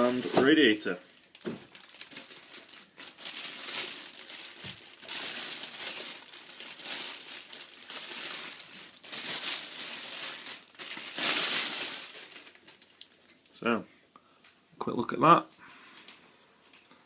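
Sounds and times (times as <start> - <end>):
plastic packaging crinkling: 0.0 - 13.6.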